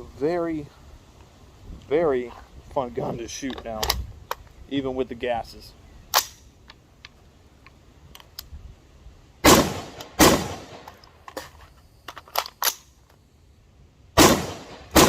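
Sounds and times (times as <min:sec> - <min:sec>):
rifle shots with ringing tail: 0:09.4 - 0:10.9, 0:14.2 - 0:15.0.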